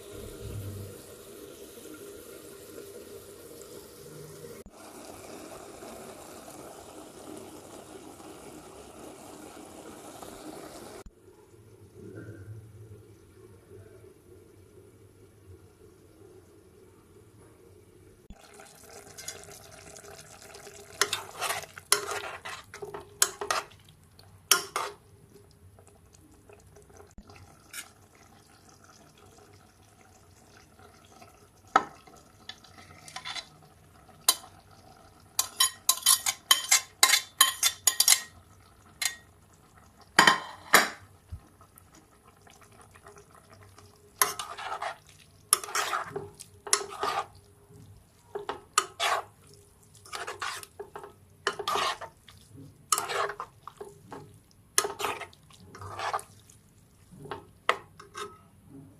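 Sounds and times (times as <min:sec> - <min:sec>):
utensil scraping cooking pan: 0:19.0 - 0:23.9, 0:24.5 - 0:25.1, 0:27.6 - 0:28.1, 0:31.8 - 0:33.6, 0:35.4 - 0:38.4, 0:44.1 - 0:58.5.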